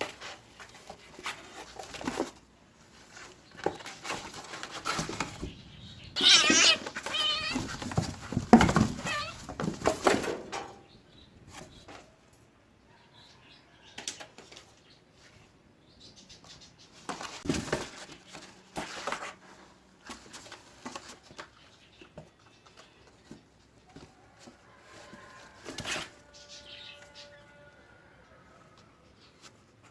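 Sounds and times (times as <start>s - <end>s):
cats scuffling in cardboard box: 0.0s - 10.5s, 16.9s - 26.5s.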